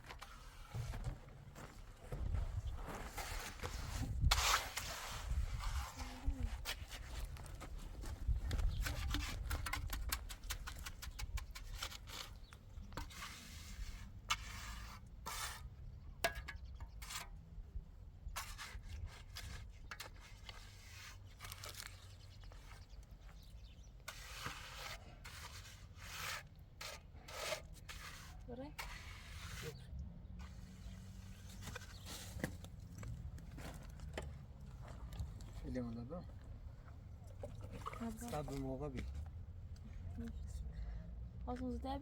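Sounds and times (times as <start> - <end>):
irregular scrapes and clicks: 3.1 - 15.7.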